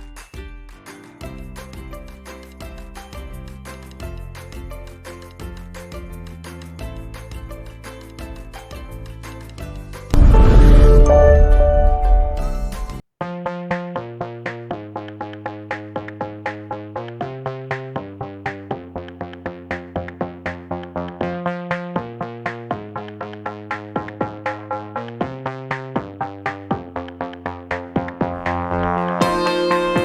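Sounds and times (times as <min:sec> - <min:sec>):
electronic music with synthesizer: 0:10.2 - 0:30.0.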